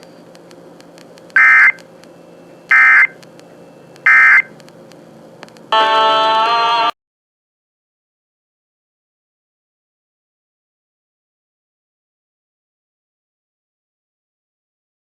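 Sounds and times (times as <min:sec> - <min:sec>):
warbling data tone bursts: 0:01.4 - 0:01.8, 0:02.7 - 0:03.1, 0:04.1 - 0:04.5
sustained musical chord: 0:05.8 - 0:06.9.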